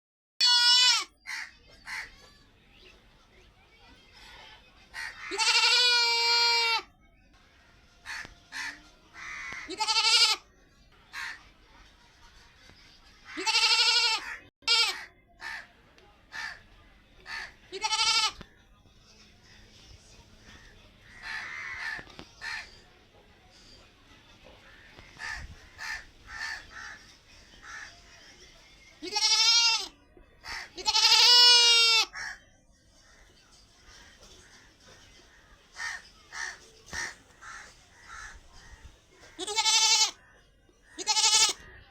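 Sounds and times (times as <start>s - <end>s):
goat bleating: 0.4s - 1.2s, 5.3s - 6.9s, 9.6s - 10.5s, 13.4s - 15.1s, 17.7s - 18.4s, 29.0s - 30.0s, 30.6s - 32.2s, 39.3s - 40.2s, 41.0s - 41.7s.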